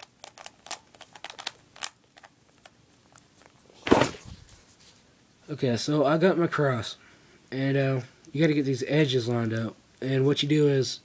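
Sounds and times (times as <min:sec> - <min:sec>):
puzzle cube plastic clicks: 0:00.0 - 0:03.2.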